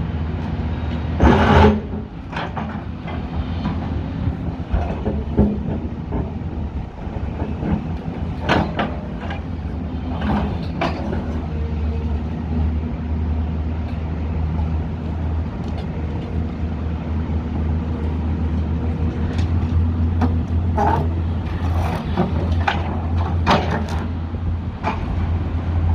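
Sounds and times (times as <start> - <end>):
diesel excavator engine running: 0.0 - 25.9.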